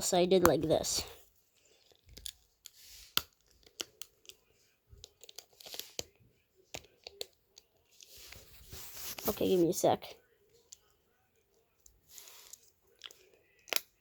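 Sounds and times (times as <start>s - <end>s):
soft rustling: 8.0s - 9.9s.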